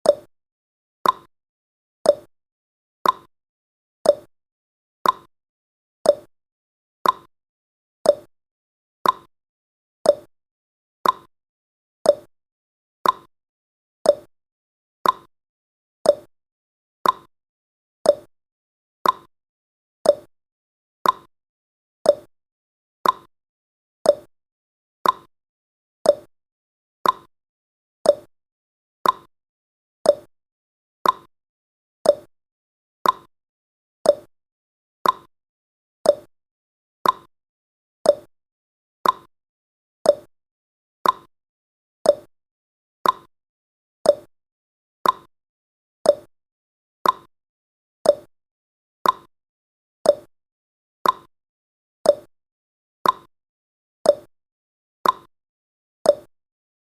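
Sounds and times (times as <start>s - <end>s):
clock ticking: 27.0s - 27.3s, 33.0s - 33.3s, 35.0s - 35.3s, 43.0s - 43.3s, 45.0s - 45.3s, 47.0s - 47.3s, 51.0s - 51.3s.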